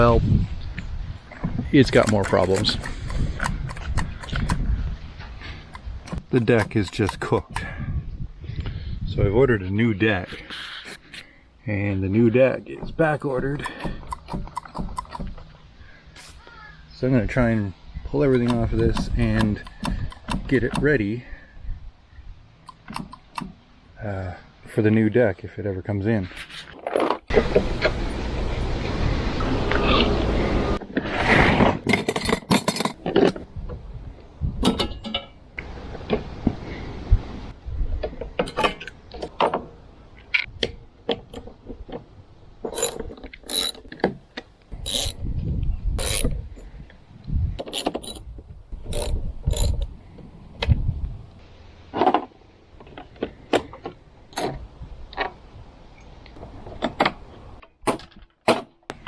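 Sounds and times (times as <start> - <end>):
socket ratchet clicking: 2.0 - 4.6, 10.9 - 11.2, 42.8 - 43.8, 44.9 - 45.2, 46.0 - 46.6, 47.6 - 48.2, 48.8 - 49.8
metal knocks and clanks: 31.9 - 33.0, 47.6 - 48.2.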